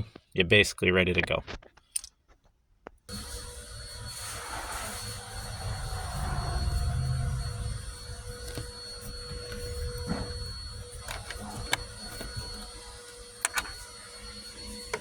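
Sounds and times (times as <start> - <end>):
small metallic clicks: 1.6 - 2.4
low rubbing rumble: 4.3 - 11.1
handling noise: 7.5 - 15.0.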